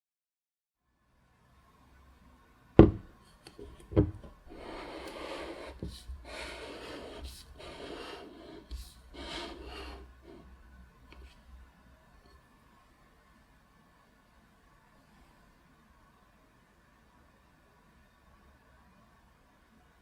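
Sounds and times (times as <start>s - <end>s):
sharp knocks: 2.8s - 3.1s.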